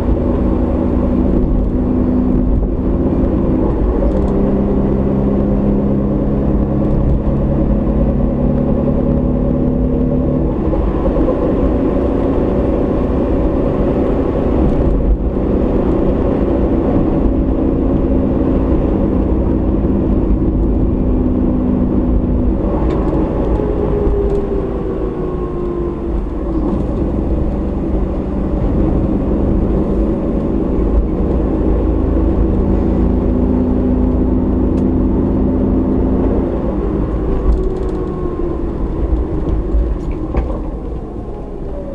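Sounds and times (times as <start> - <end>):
car engine and road noise: 0.0 - 41.9.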